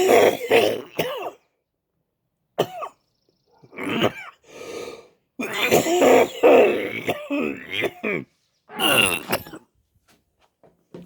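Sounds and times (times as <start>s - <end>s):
person coughing: 0.0s - 1.4s, 5.4s - 9.6s.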